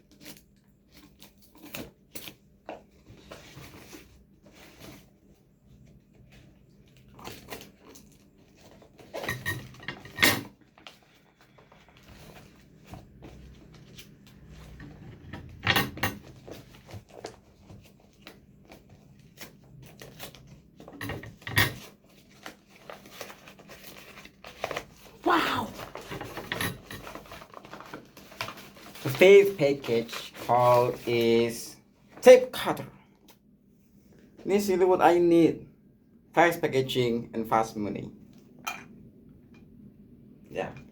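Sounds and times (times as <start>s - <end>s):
package rustling: 16.2s - 32.5s.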